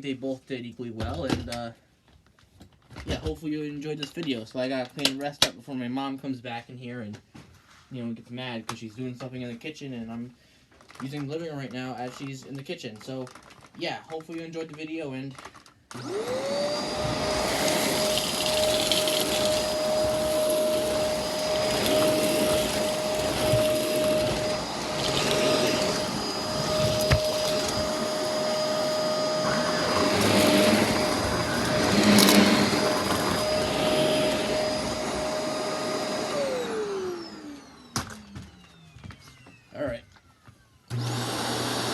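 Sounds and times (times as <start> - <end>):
vacuum suction over rug: 15.9 - 39.5, 40.9 - 41.9
vacuum cleaner motor whine: 15.9 - 41.9.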